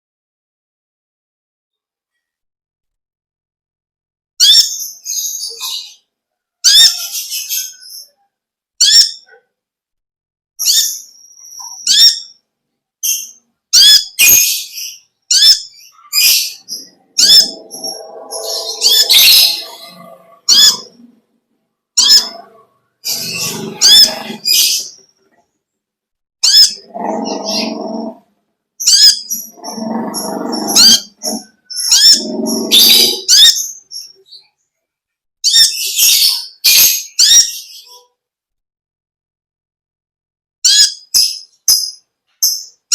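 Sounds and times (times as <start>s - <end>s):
bird harsh chattering: 15.3s - 21.0s, 22.0s - 25.0s, 26.4s - 28.2s, 28.8s - 33.7s.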